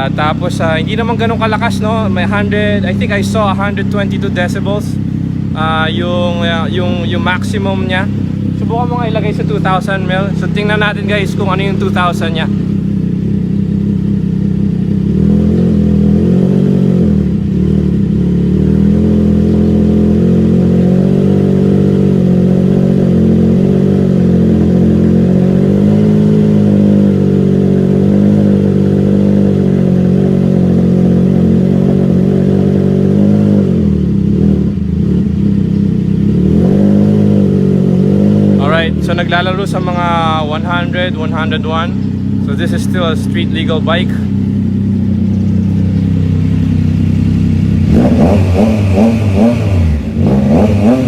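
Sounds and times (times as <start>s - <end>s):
motorcycle engine idling steady: 0.0s - 51.0s.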